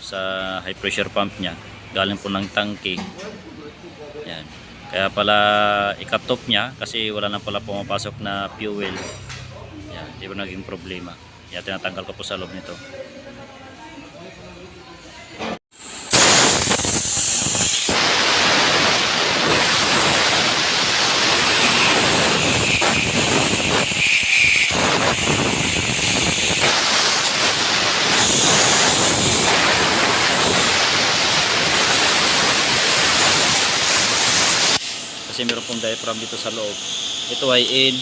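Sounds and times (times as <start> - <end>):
compressed air hissing: 15.7 - 38.0.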